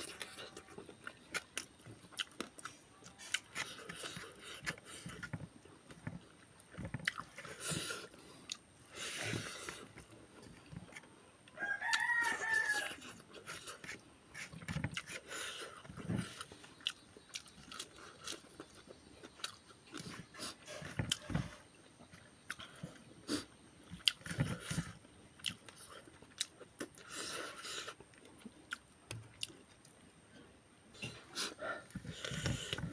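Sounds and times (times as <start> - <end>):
chewing and crunching food: 0.0 - 32.9
rooster crowing: 11.6 - 13.0.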